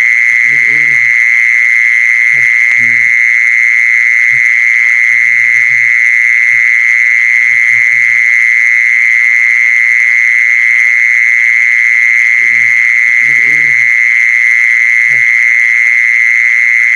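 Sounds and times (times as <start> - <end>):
animal high-pitched trill: 0.0 - 1.2, 2.3 - 3.1, 12.4 - 14.0.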